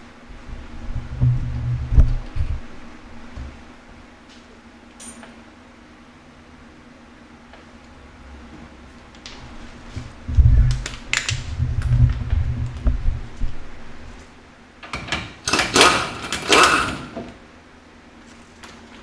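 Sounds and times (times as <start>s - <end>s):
low knocks and rumbling: 0.6s - 2.7s, 10.0s - 13.8s.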